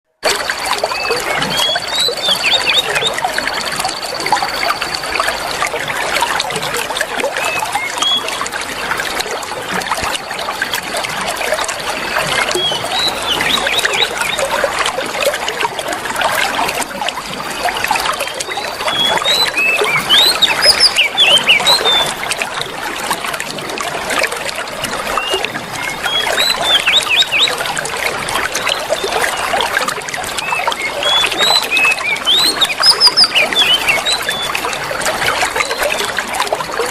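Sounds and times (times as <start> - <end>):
trickling water: 0.2 - 36.9
songbird chirps and whistles: 0.8 - 5.1, 7.4 - 8.4, 12.1 - 14.6, 17.8 - 22.2, 25.2 - 27.6, 30.4 - 36.1.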